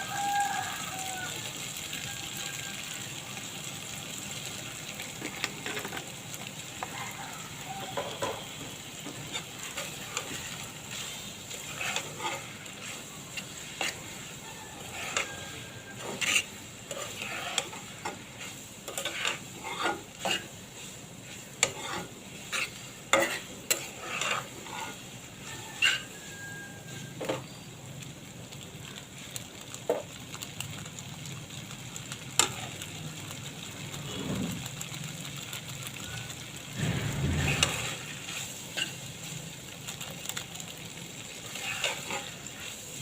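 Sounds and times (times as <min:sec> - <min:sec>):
noodles sizzling in a pan: 0:00.0 - 0:43.0
utensil scraping a pan: 0:07.9 - 0:27.4, 0:36.0 - 0:39.1, 0:41.4 - 0:42.9.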